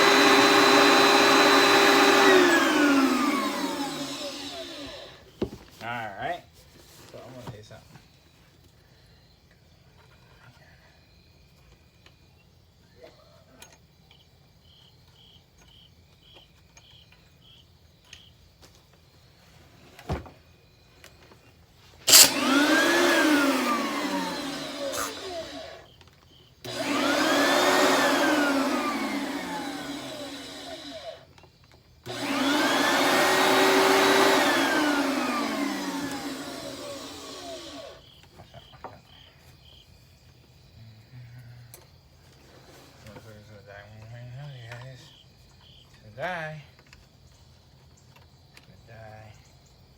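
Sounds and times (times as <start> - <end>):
vacuum cleaner motor whining: 0.0 - 5.6, 22.1 - 26.0, 26.6 - 31.4, 32.0 - 38.1.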